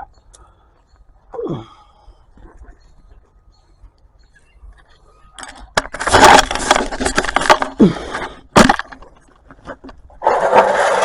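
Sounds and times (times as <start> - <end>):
metal scraping and clanking: 5.4 - 11.0.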